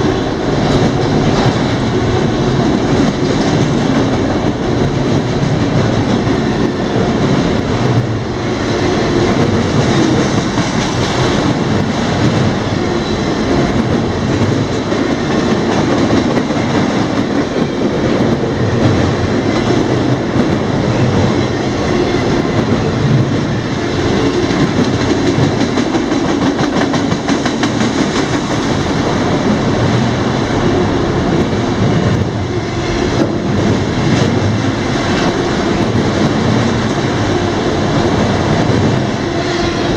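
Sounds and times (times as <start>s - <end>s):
train wheels rumbling on rail: 0.0s - 39.9s
wheels clacking over rail joints: 8.8s - 30.1s.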